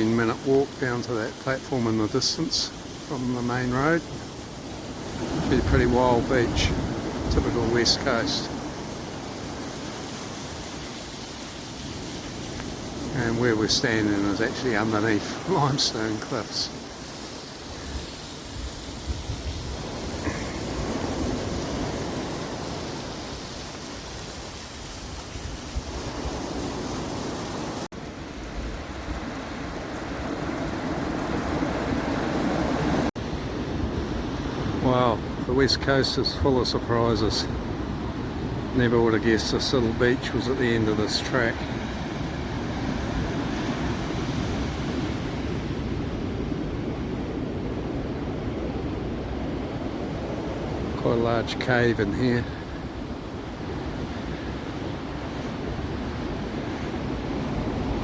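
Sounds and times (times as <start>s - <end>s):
surf washing on beach: 0.0s - 58.0s
wind rumble on microphone: 17.8s - 23.9s, 52.2s - 58.0s.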